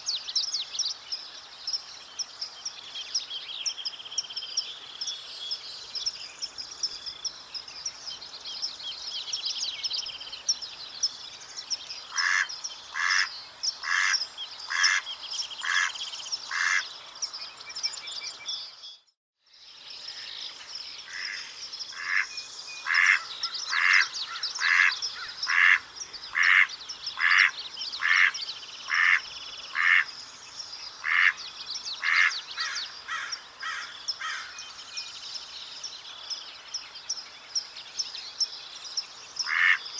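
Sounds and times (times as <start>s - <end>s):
songbirds singing: 0.0s - 39.9s
mallard quacking: 12.2s - 15.0s.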